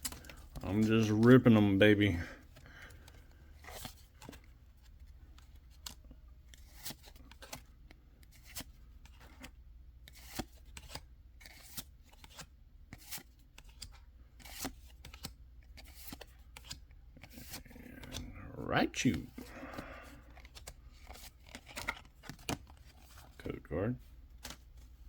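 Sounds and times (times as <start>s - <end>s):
trading cards snapping and sliding: 10.1s - 18.3s, 19.7s - 23.4s, 24.4s - 24.9s.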